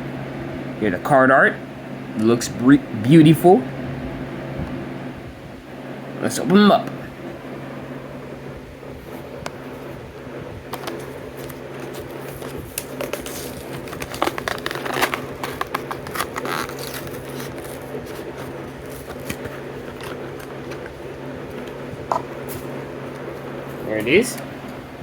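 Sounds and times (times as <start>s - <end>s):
plastic packaging crinkling: 10.7s - 23.9s.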